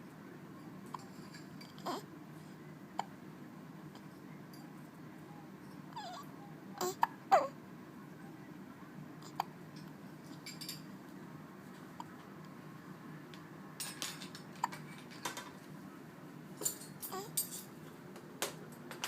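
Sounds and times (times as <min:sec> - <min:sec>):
baby hiccupping: 0:01.8 - 0:02.0, 0:06.8 - 0:07.6, 0:14.6 - 0:14.8.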